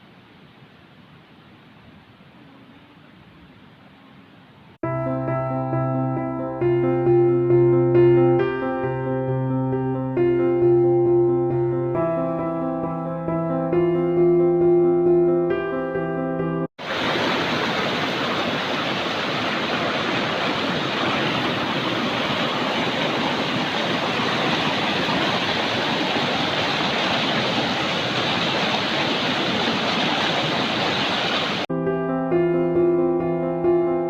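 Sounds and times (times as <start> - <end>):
rushing water: 16.8 - 31.7.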